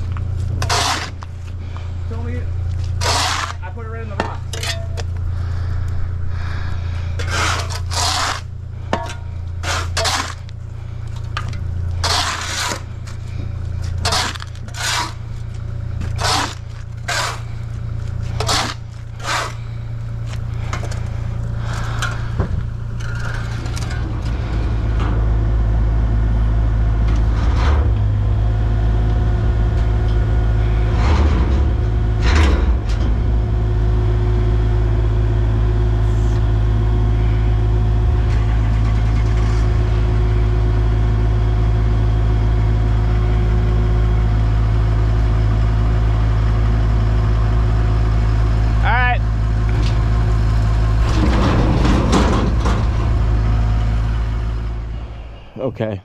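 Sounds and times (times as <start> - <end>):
engine humming: 0.0 - 56.0
shovels digging into stony soil: 0.5 - 1.3, 2.8 - 3.7, 7.2 - 10.6, 11.9 - 13.2, 13.8 - 15.2, 16.0 - 19.7.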